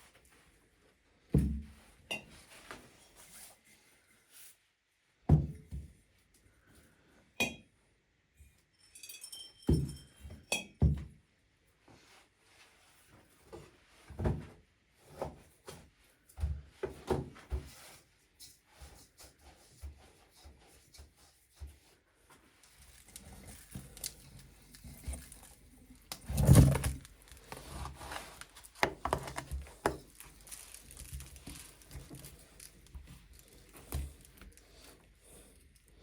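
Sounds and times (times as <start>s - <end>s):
glass jars clinking: 8.8s - 10.8s.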